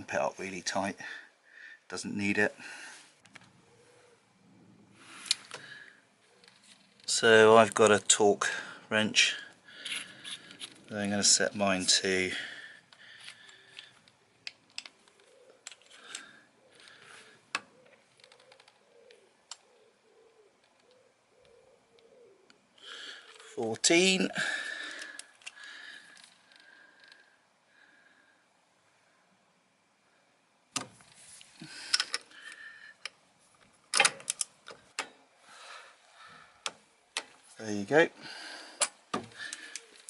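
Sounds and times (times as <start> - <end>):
pigeon cooing: 3.5 - 4.8, 15.0 - 23.6, 39.4 - 40.0.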